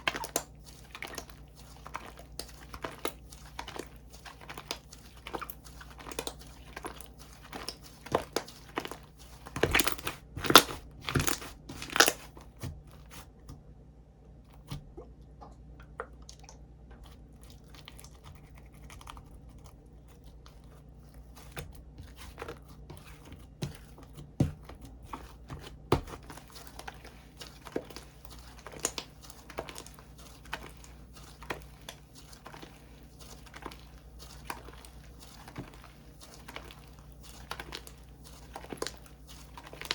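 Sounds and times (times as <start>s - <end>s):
slime squishing and popping: 0.0s - 12.3s, 23.7s - 39.9s.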